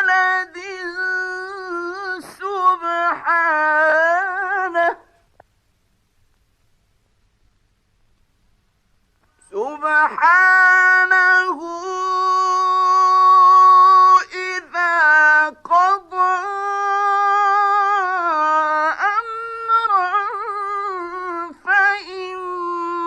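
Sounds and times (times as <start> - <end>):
man chanting melodically: 9.4 - 23.0.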